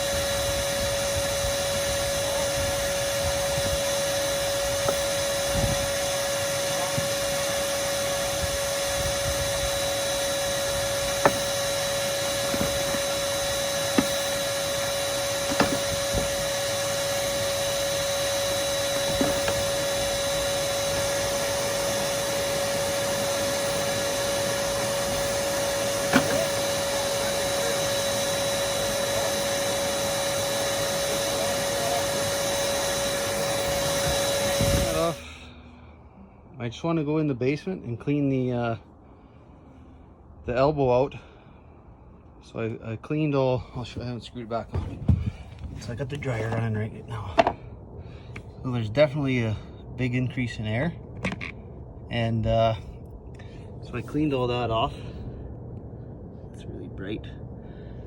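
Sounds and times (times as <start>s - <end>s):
electric motor whining: 0.0s - 35.4s.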